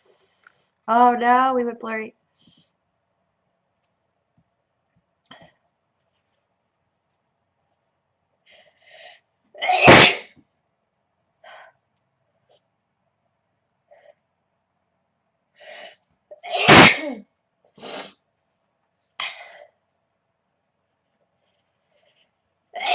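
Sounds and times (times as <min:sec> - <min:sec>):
woman sneezing: 0:09.6 - 0:10.3, 0:16.4 - 0:18.2.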